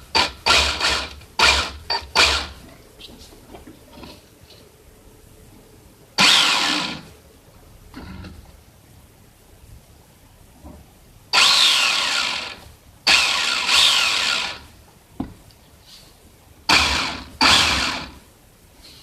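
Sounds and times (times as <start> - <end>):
toy car motor whining: 6.2 - 7.0, 11.4 - 14.6.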